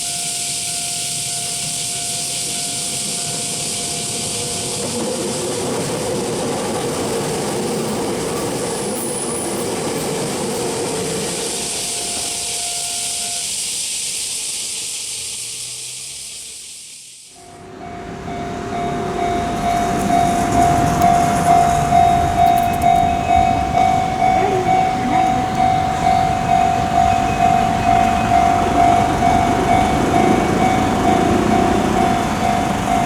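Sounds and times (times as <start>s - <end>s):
level crossing warning bell: 0.0s - 5.0s, 17.4s - 33.0s
electric train passing: 0.0s - 33.0s.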